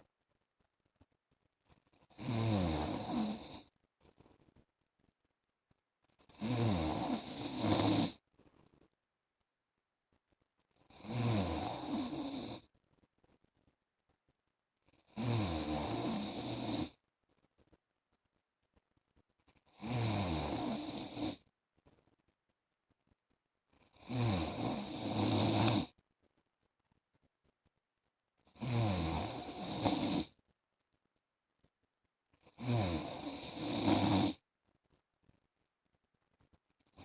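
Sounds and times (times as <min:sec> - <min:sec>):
man snoring: 0:02.1 - 0:03.6, 0:06.3 - 0:08.2, 0:10.9 - 0:12.6, 0:15.2 - 0:16.9, 0:19.8 - 0:21.4, 0:24.0 - 0:25.9, 0:28.6 - 0:30.3, 0:32.6 - 0:34.4.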